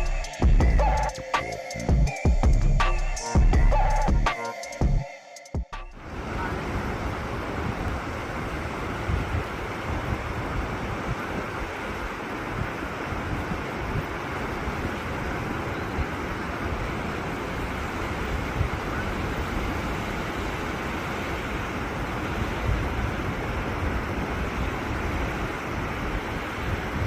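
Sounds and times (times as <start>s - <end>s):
surf washing: 6.0s - 27.0s
wind buffeting microphone: 6.0s - 27.0s.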